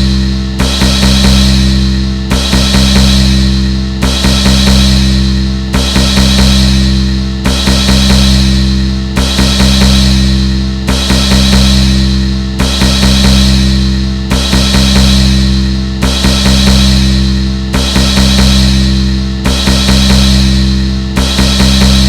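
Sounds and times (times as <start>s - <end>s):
drum strikes ringing: 0.0s - 22.0s.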